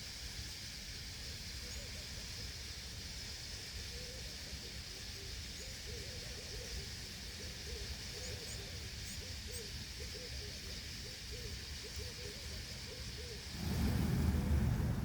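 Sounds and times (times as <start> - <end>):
rushing hiss of swarming birds: 13.4 - 15.0.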